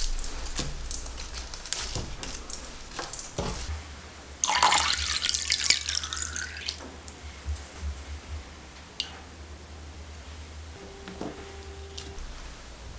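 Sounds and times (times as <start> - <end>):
tap running into a sink: 4.4 - 7.6.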